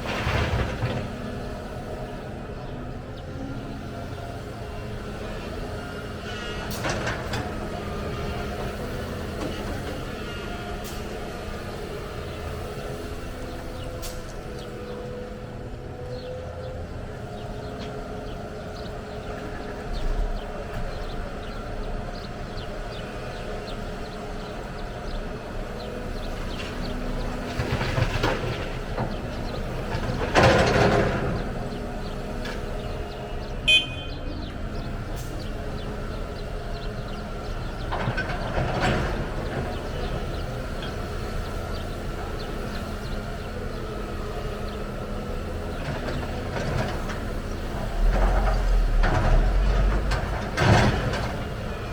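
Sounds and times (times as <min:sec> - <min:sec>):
heavy diesel machinery running: 0:00.0 - 0:51.9
brief high beep: 0:33.7 - 0:34.1.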